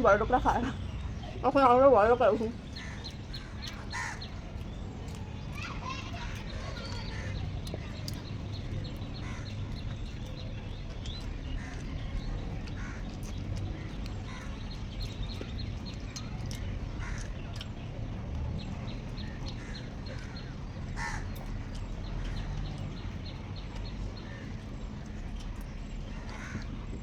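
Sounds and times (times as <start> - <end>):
people eating: 0.0 - 27.0
crows cawing: 2.6 - 4.4, 9.2 - 9.7, 12.7 - 13.1, 17.0 - 17.4, 19.2 - 22.5, 26.1 - 26.7.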